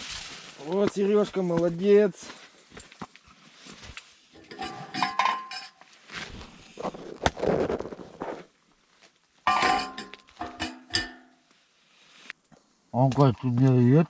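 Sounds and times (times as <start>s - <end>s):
gear clinking and knocking: 4.4s - 5.8s, 9.5s - 11.4s
scraping: 4.4s - 8.4s, 9.5s - 11.4s.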